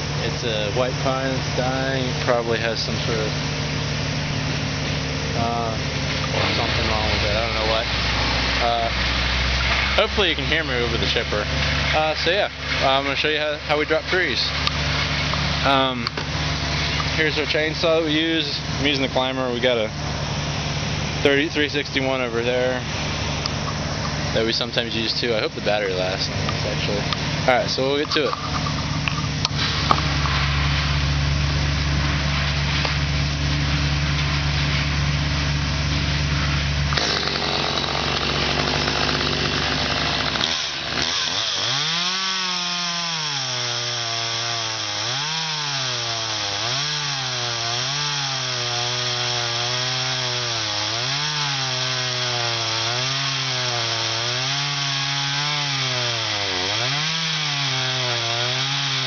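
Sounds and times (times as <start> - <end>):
wood chipper engine hum: 0.0 - 59.0
chainsaw cutting wood: 5.3 - 19.9, 36.0 - 59.0.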